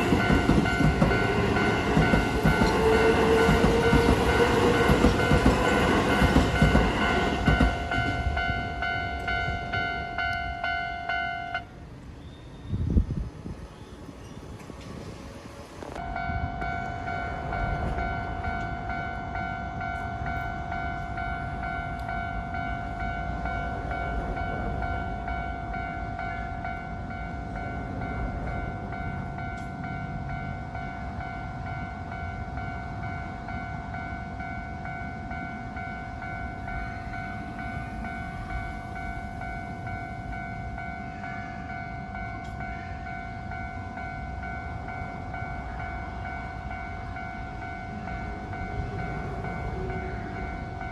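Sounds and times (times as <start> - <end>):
railroad crossing warning bell: 0.0 - 11.9, 16.0 - 50.9
electric train rumbling: 0.0 - 50.9.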